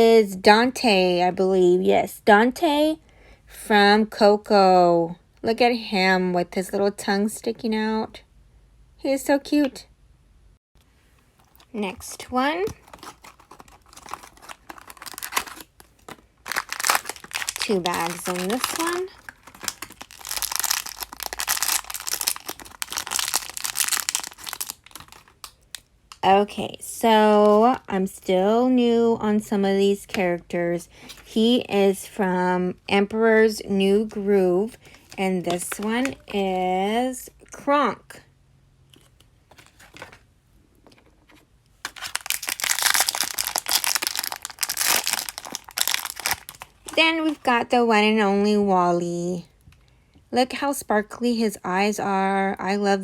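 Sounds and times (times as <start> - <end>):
plastic bags crinkling: 11.4 - 26.2, 34.8 - 36.4, 41.8 - 47.5.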